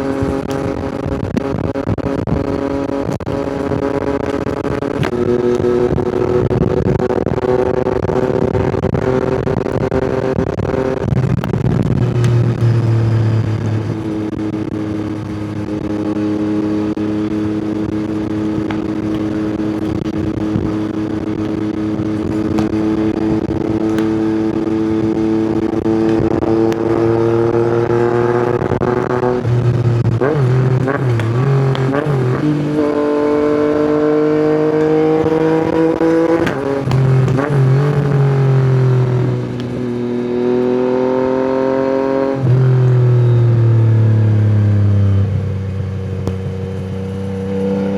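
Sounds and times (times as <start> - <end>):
motorcycle engine revving: 0.0 - 47.9.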